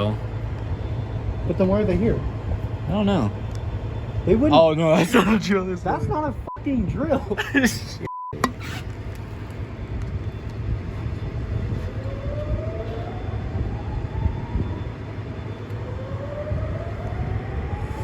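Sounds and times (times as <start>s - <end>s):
low engine rumble: 0.0s - 18.0s
siren rising in pitch: 11.0s - 18.0s.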